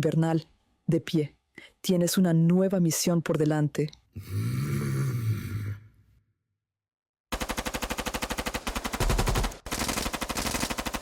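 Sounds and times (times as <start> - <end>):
automatic gunfire: 7.3 - 11.0.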